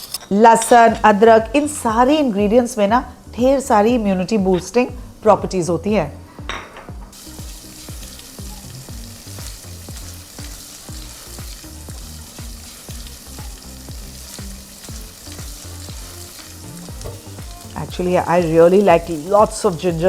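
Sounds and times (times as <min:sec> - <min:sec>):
background music with beat: 0:00.9 - 0:20.0
garlic sizzling in a pan: 0:07.1 - 0:20.0.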